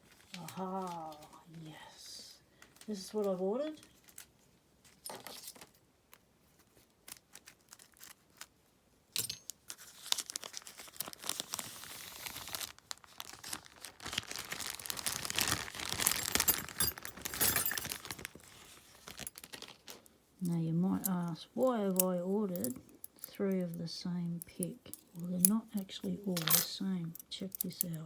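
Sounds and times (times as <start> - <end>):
packaging crinkling and tearing: 3.8 - 4.3, 6.6 - 8.6, 9.6 - 20.1.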